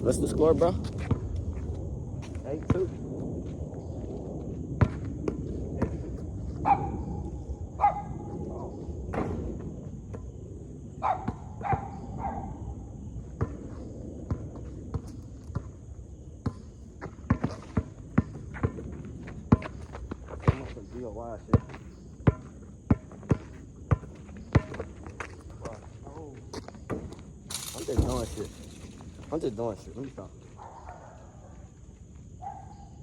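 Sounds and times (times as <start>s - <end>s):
shoes scuffing on a court: 0.8s - 2.8s, 16.5s - 20.8s
faint high whine: 27.5s - 30.4s.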